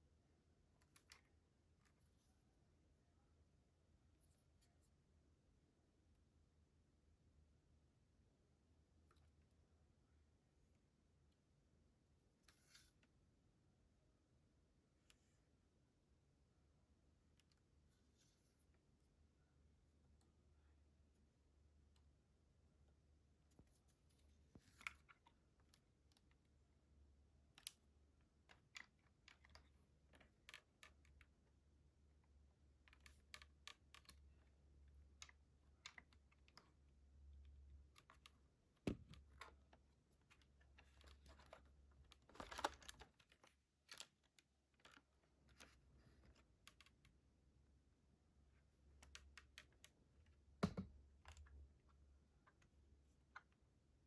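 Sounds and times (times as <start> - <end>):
small clicks and clatters: 0.8 - 2.2, 23.5 - 47.2, 48.6 - 53.8.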